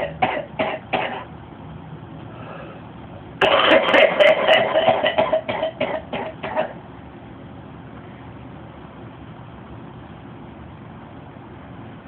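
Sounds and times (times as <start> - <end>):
man coughing: 0.0 - 1.3, 3.4 - 6.8.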